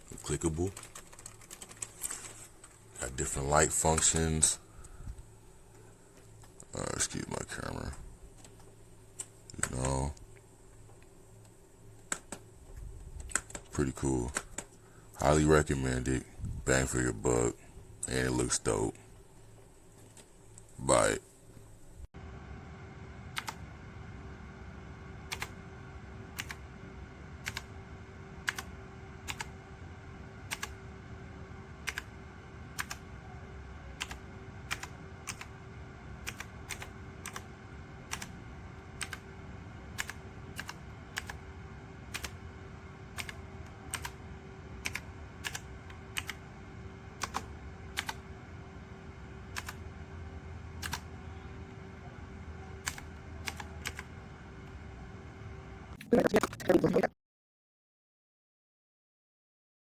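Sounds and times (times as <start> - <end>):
faint steady hum: 0.0 - 57.1.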